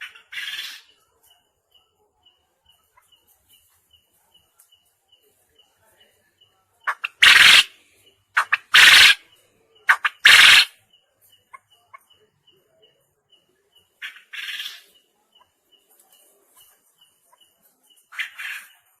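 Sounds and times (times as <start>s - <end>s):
quail calling: 0.0s - 0.9s, 6.9s - 7.8s, 8.4s - 9.2s, 9.9s - 10.8s, 14.0s - 14.9s, 18.1s - 18.8s.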